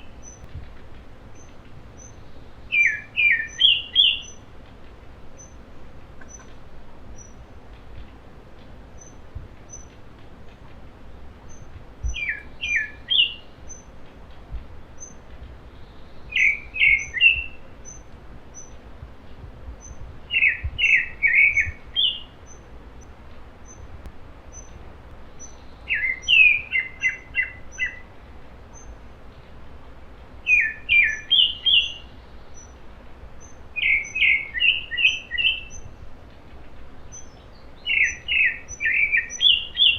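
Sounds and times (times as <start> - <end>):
songbird trilling notes: 0.0 - 0.5, 1.4 - 4.5, 5.4 - 5.6, 6.2 - 7.5, 9.0 - 10.0, 11.4 - 14.0, 14.9 - 18.8, 19.8 - 23.9, 24.5 - 28.1, 28.7 - 29.6, 30.4 - 32.8, 33.4 - 36.0, 37.0 - 39.9.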